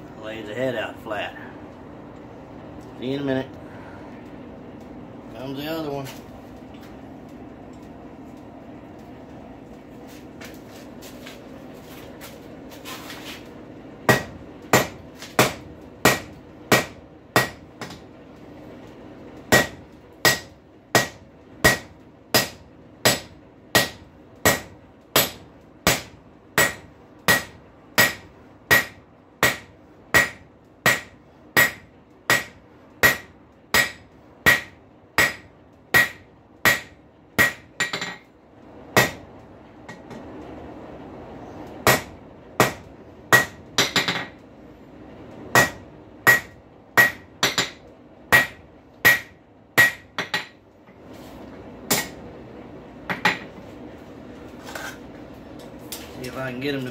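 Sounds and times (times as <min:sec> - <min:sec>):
hammer striking metal on anvil: 0:14.1 - 0:18.0, 0:19.5 - 0:38.2, 0:39.0 - 0:39.2, 0:41.8 - 0:44.4, 0:45.5 - 0:50.6, 0:51.9 - 0:52.2.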